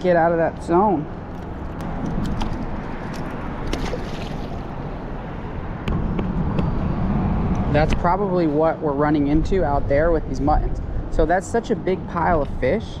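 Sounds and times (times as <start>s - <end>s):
wind: 0.0s - 13.0s
water splashing: 1.2s - 5.3s.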